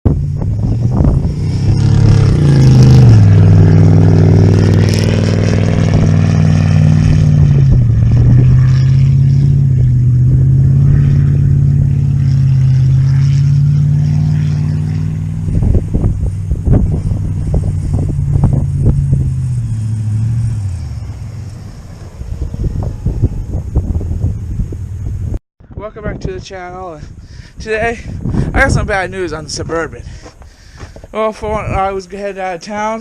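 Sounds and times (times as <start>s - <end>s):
vehicle engine revving: 0.1s - 25.4s.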